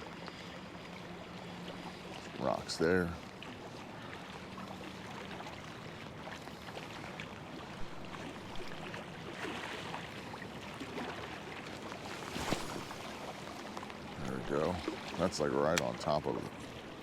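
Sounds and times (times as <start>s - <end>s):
light ticks: 15.6s - 16.0s.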